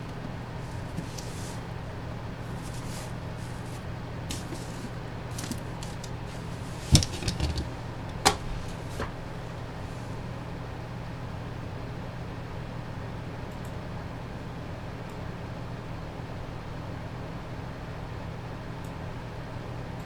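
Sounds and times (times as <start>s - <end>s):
small rattles: 0.0s - 10.2s.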